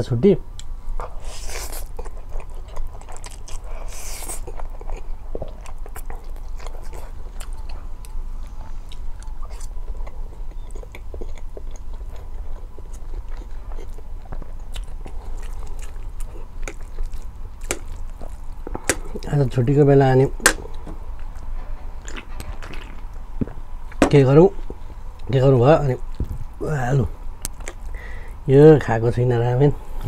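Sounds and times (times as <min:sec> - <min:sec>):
steady low hum: 0:00.0 - 0:30.0
person chewing food: 0:00.6 - 0:19.3, 0:20.4 - 0:25.3, 0:26.1 - 0:26.6, 0:27.4 - 0:28.2
wet mouth clicks: 0:27.4 - 0:28.0.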